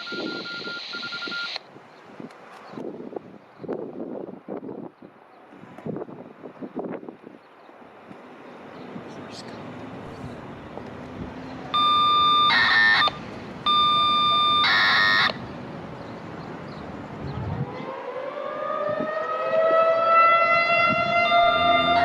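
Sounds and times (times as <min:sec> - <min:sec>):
radio scanner paging tones: 0:00.0 - 0:01.6, 0:11.8 - 0:15.4
outdoor warning siren winding up: 0:11.8 - 0:15.4, 0:18.0 - 0:22.0.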